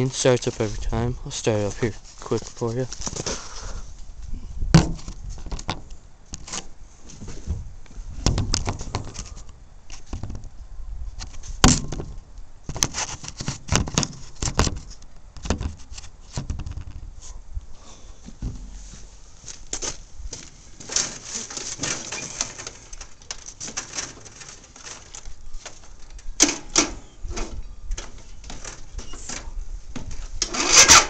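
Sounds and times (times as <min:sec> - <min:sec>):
knocks clicks and scrapes of handling: 0:11.2 - 0:17.0, 0:19.8 - 0:31.0.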